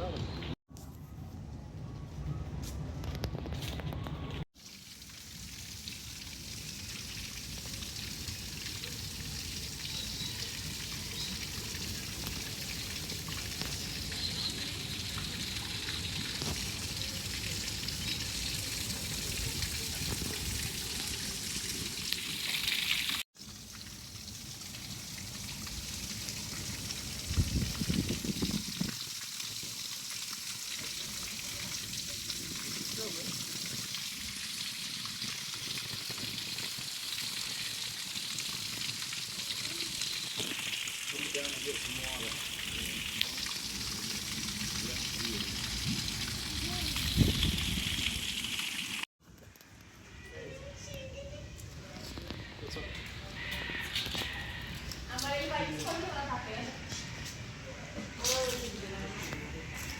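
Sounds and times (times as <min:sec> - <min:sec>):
running water hissing: 0:04.6 - 0:49.1.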